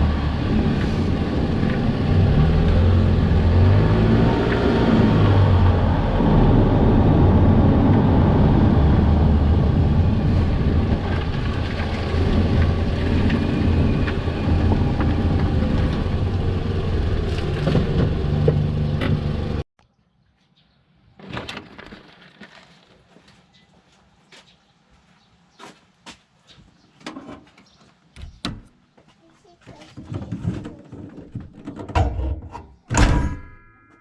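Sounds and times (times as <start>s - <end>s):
car engine and road noise: 0.0s - 19.7s.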